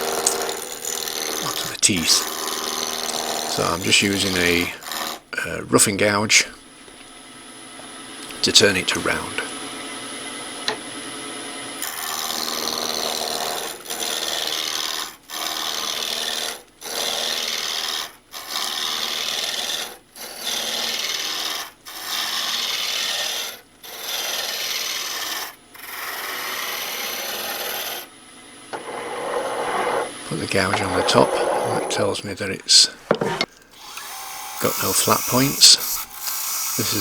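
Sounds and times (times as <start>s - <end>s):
gouge cutting wood on lathe: 0.0s - 5.3s, 7.6s - 37.0s.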